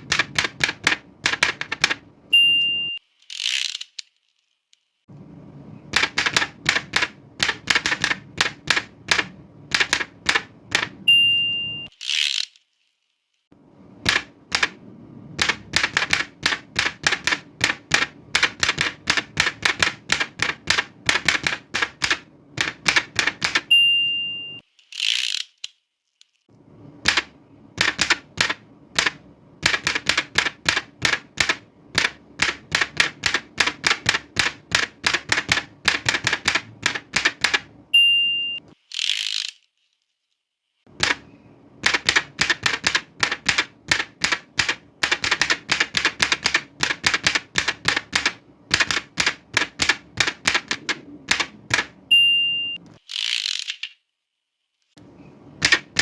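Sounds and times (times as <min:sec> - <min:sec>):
typewriter carriage return swish: 0:00.0 - 0:02.0, 0:03.2 - 0:04.1, 0:05.9 - 0:11.0, 0:11.9 - 0:12.6, 0:14.0 - 0:14.8, 0:15.4 - 0:23.7, 0:24.8 - 0:25.7, 0:27.0 - 0:37.7, 0:38.7 - 0:39.7, 0:41.0 - 0:52.0, 0:52.9 - 0:54.0, 0:55.6 - 0:56.0
typewriter keys clacking: 0:00.0 - 0:02.0, 0:05.9 - 0:11.0, 0:14.0 - 0:14.8, 0:15.4 - 0:23.7, 0:27.0 - 0:37.8, 0:41.0 - 0:52.0, 0:55.6 - 0:56.0
typewriter margin bell ding: 0:02.4 - 0:03.0, 0:11.1 - 0:11.9, 0:23.7 - 0:24.6, 0:38.0 - 0:38.6, 0:52.1 - 0:52.8.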